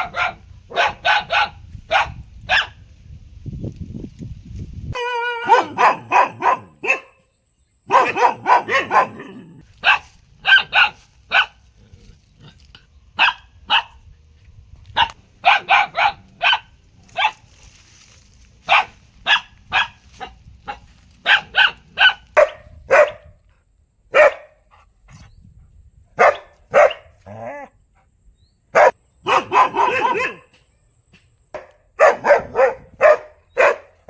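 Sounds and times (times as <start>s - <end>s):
dog barking: 0.0s - 2.8s, 5.4s - 7.2s, 7.9s - 11.6s, 13.2s - 14.0s, 15.0s - 17.4s, 18.7s - 23.4s, 24.1s - 24.6s, 26.2s - 27.7s, 28.7s - 30.5s, 31.6s - 34.0s.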